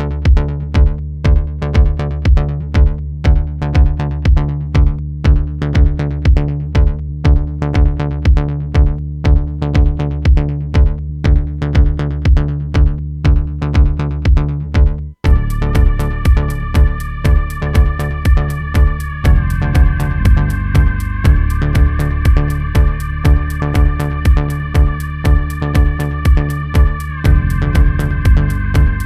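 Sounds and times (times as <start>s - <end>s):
electronic music with drum-machine beat: 15.2s - 29.0s.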